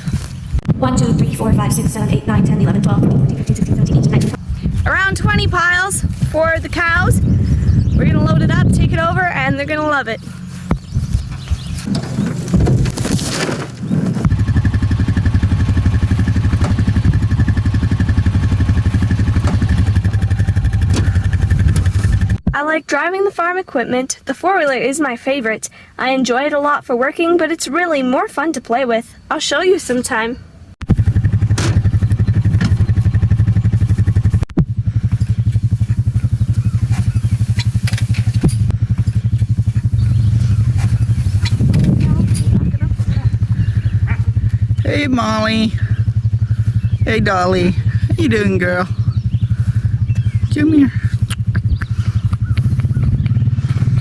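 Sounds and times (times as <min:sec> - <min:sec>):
atv engine running: 0:00.0 - 0:22.7, 0:30.8 - 0:54.0
brief rustling: 0:10.3 - 0:14.3.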